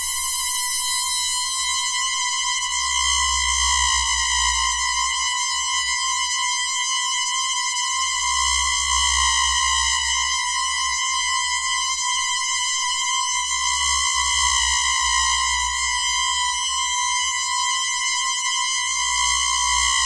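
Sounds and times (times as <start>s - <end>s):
electronic drone tone: 0.0s - 2.4s.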